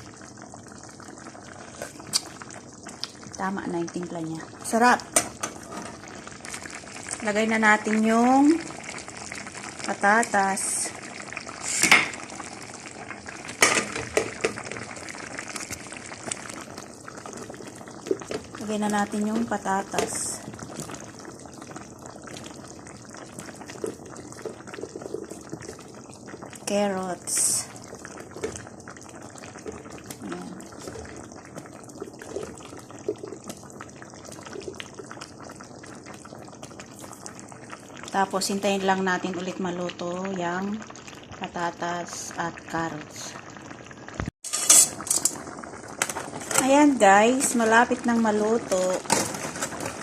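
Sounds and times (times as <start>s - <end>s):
sauce bubbling in a pot: 0.0s - 50.0s
splashing clatter in pot: 13.6s - 14.8s, 44.4s - 46.8s, 49.0s - 50.0s.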